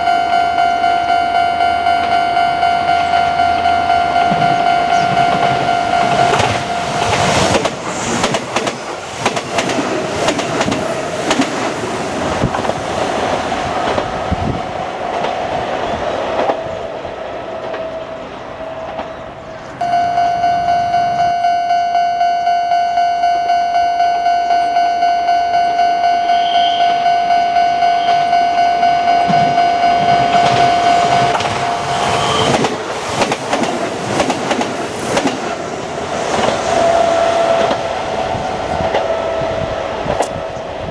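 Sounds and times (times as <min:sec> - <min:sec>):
level-crossing warning bell: 0:00.0 - 0:07.7, 0:19.8 - 0:32.9
train wheels clattering on rails: 0:04.2 - 0:16.9, 0:29.3 - 0:40.6.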